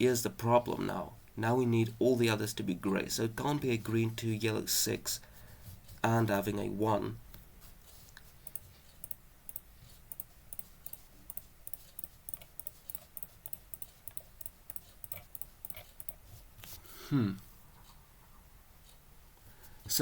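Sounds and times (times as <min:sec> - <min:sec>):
computer mouse clicks: 0:08.2 - 0:16.2.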